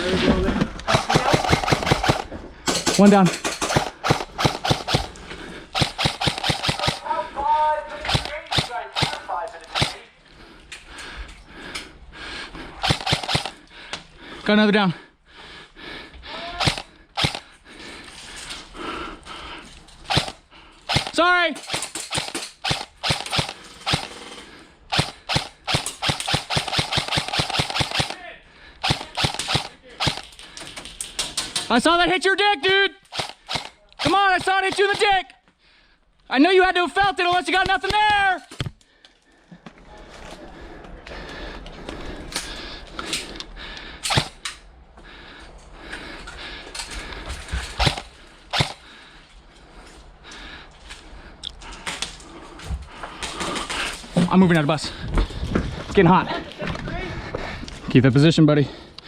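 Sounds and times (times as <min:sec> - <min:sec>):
airsoft gun shots: 0:00.9 - 0:05.1, 0:05.8 - 0:07.0, 0:08.1 - 0:10.0, 0:12.8 - 0:13.5, 0:20.1 - 0:24.1, 0:24.9 - 0:28.2, 0:28.8 - 0:30.2, 0:47.8 - 0:48.8.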